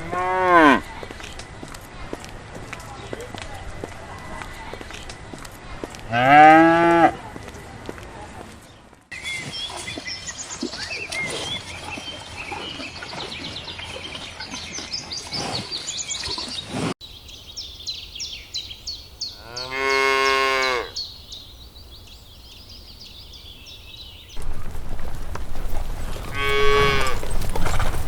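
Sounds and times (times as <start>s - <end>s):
cow mooing: 0.0s - 0.8s, 6.1s - 7.2s, 19.4s - 21.0s, 26.2s - 27.3s
small birds chirping: 7.2s - 28.0s
rough background noise: 23.6s - 28.0s.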